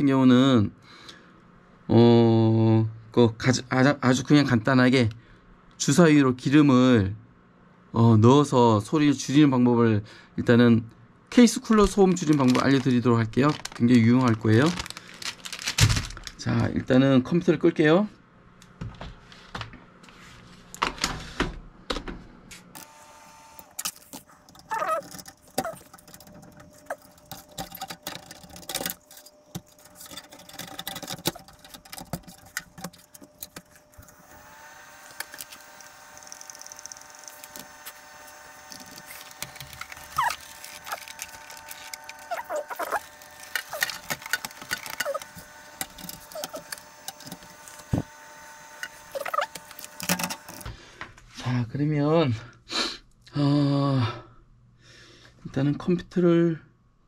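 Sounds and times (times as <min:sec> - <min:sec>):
hands handling computer parts: 0:11.7 - 0:16.9, 0:23.8 - 0:34.2, 0:35.0 - 0:48.2.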